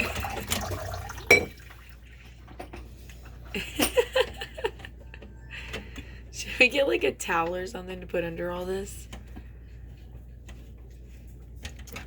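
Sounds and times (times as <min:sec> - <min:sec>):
water dripping and trickling: 0:00.0 - 0:02.4.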